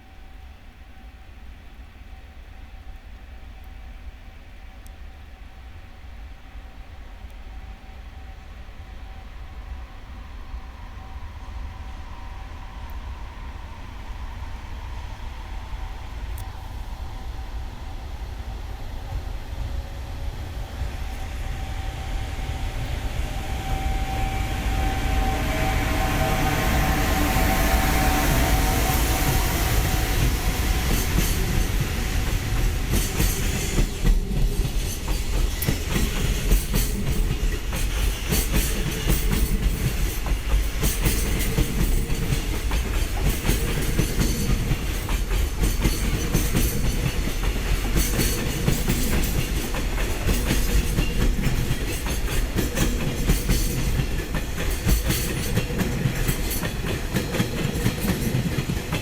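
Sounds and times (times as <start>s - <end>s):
train rumble: 0.0s - 59.0s
train wheels clacking on rails: 19.0s - 59.0s.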